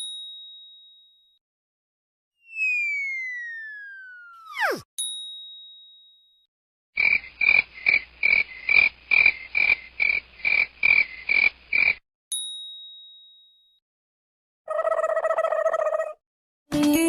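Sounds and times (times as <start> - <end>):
frog croaking: 7.0 - 12.0.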